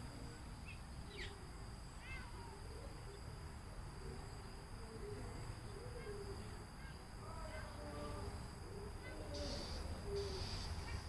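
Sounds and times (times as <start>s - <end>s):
crickets droning: 0.0s - 11.0s.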